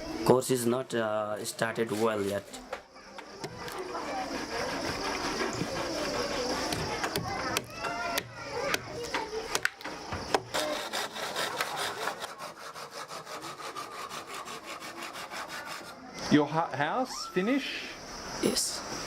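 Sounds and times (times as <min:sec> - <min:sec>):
hand saw cutting wood: 0:03.4 - 0:08.8, 0:10.3 - 0:16.0.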